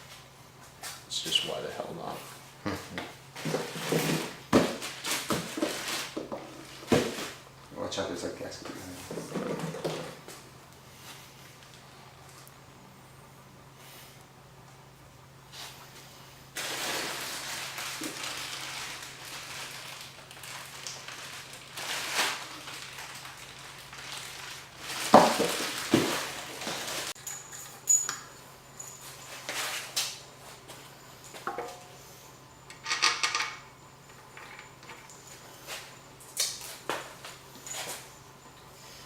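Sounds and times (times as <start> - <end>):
metal parts clinking and knocking: 32.7 - 33.6.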